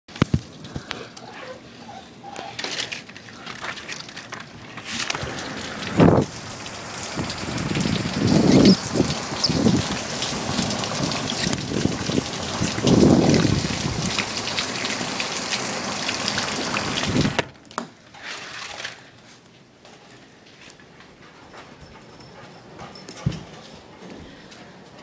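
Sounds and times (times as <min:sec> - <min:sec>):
heavy rain pouring: 0:03.4 - 0:17.5.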